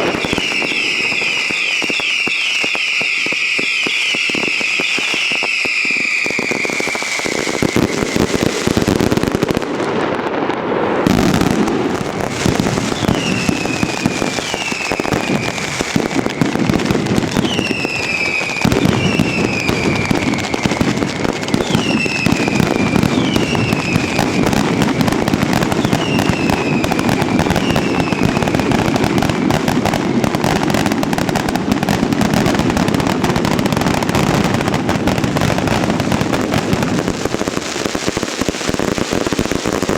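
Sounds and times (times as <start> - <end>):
firework whistles falling in pitch: 0.0 - 8.8, 12.2 - 32.5
fireworks crackling and popping: 0.0 - 39.9.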